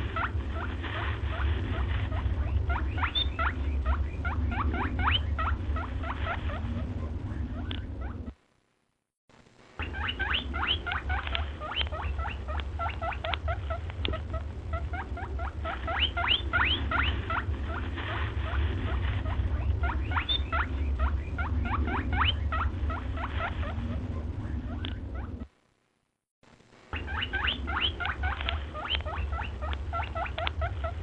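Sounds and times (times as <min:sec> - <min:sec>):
low rumble: 0:00.0 - 0:08.7, 0:09.6 - 0:25.7, 0:26.7 - 0:31.0
small animals squeaky chirps: 0:01.3 - 0:08.3, 0:09.8 - 0:17.8, 0:18.4 - 0:25.5, 0:27.0 - 0:31.0.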